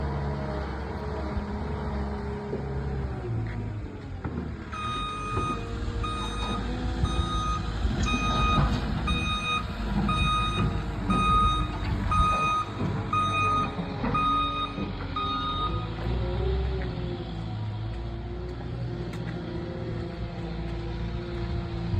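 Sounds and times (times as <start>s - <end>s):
low engine rumble: 0.0s - 21.9s
backup alarm beeping: 4.8s - 16.0s.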